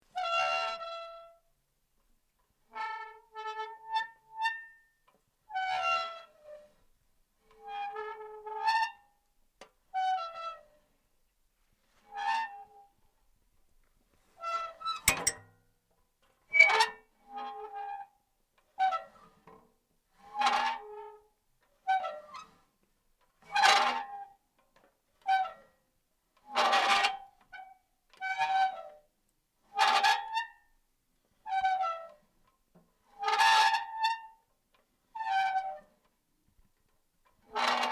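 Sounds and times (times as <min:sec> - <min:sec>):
metal creaking: 0:15.1 - 0:15.5
sharp click: 0:15.1 - 0:15.5.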